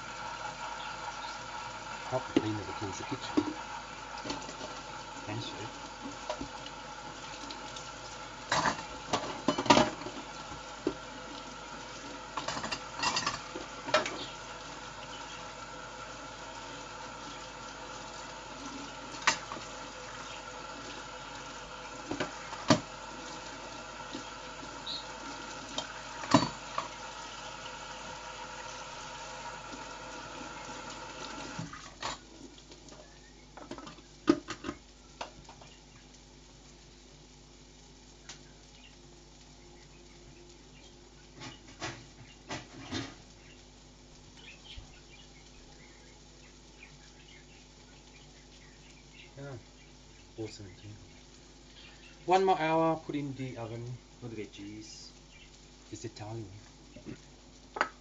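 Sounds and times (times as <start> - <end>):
appliance hum: 0.0 - 58.0.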